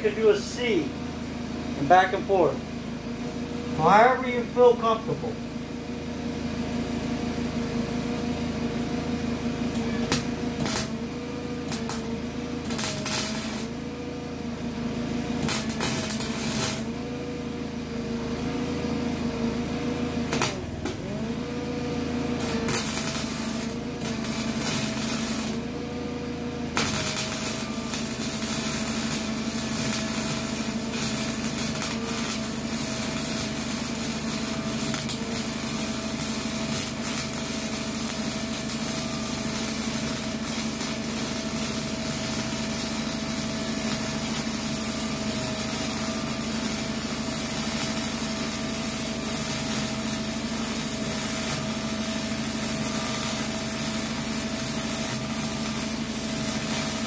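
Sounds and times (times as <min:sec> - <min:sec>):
steady hum: 0:00.0 - 0:14.8
welding arc crackling and sizzling: 0:00.0 - 0:57.0.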